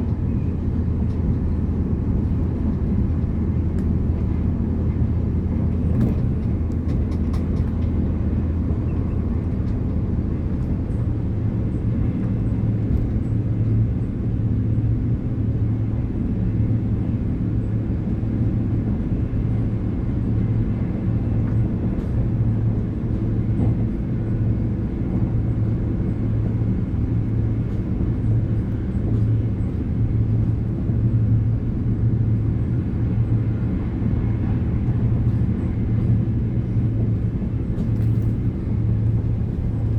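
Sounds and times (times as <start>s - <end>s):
train wheels rumbling: 19.1s - 39.9s.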